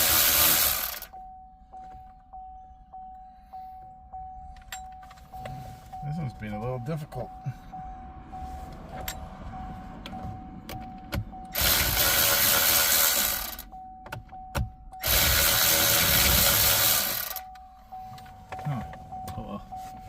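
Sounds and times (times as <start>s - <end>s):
cordless power driver running: 0.0s - 1.1s, 11.6s - 13.6s, 15.0s - 17.4s.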